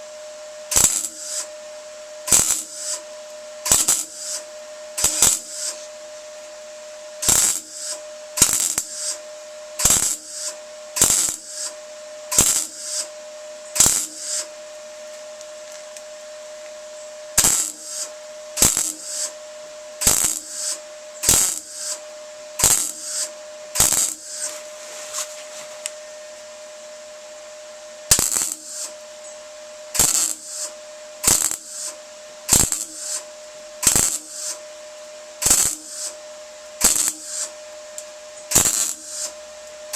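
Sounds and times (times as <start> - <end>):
faint steady hum: 0.0 - 39.9
hand tool striking metal: 3.6 - 4.4, 5.0 - 5.8, 7.2 - 9.2, 12.3 - 13.1, 17.4 - 19.3, 20.0 - 22.0, 33.8 - 34.6.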